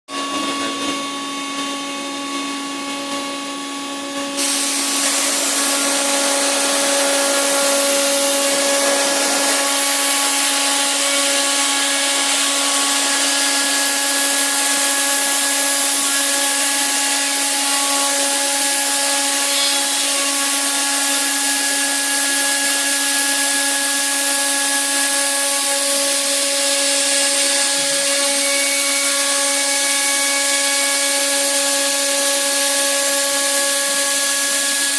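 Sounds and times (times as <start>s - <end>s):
milling spindle whine: 4.4s - 22.0s
cutter milling hiss: 4.4s - 34.9s.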